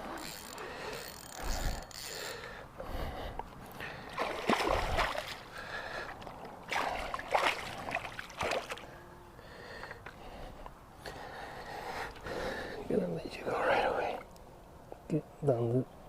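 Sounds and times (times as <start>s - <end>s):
water splashing and sloshing: 3.6s - 9.0s.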